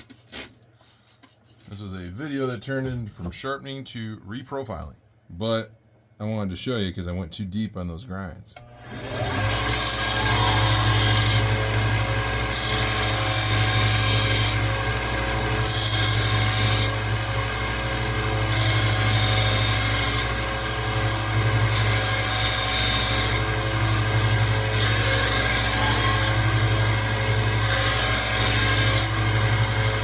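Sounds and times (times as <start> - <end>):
belt sander running: 8.6 - 30.0.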